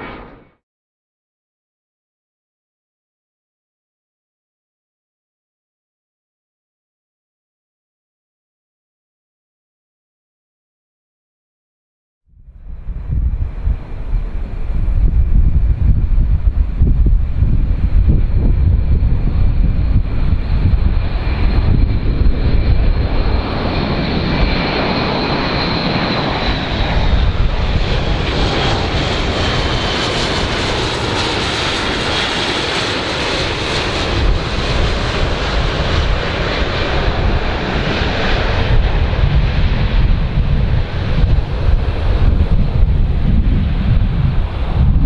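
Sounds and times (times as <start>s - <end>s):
airplane engine rumble: 0.0s - 0.6s, 12.3s - 45.0s
high engine whine: 0.0s - 0.6s, 12.4s - 45.0s.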